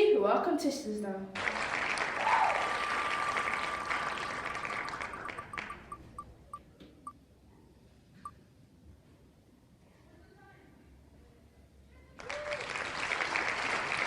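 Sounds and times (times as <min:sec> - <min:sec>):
applause: 0:01.4 - 0:06.0, 0:12.2 - 0:14.0
electronic ticking sound effect: 0:04.6 - 0:06.6.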